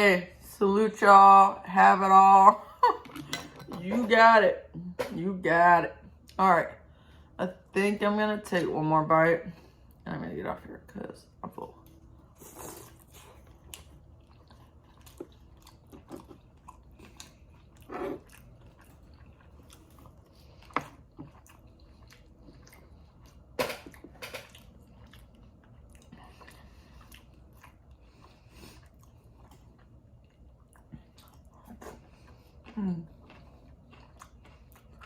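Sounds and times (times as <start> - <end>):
person chewing food: 11.8 - 35.0.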